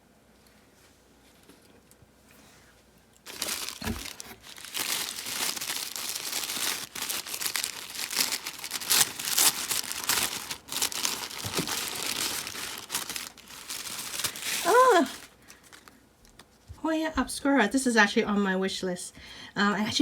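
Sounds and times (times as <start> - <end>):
wrapping paper crinkling and tearing: 3.2 - 16.5.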